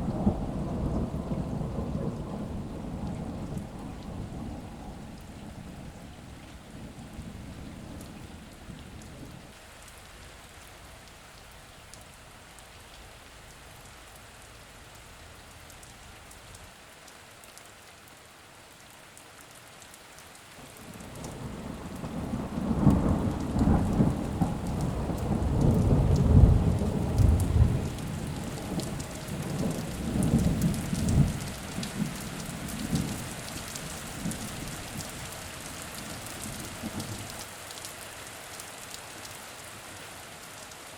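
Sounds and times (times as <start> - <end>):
rolling thunder: 0.0 - 9.4, 20.9 - 33.3
steady rain falling: 0.0 - 40.9.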